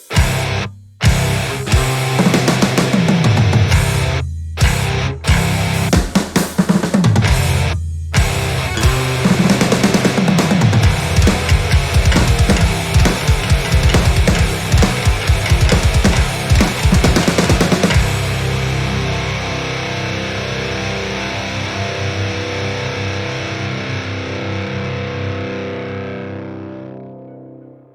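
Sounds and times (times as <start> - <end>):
heavy rock music: 0.0 - 26.9
distorted guitar chord ringing: 7.5 - 27.8.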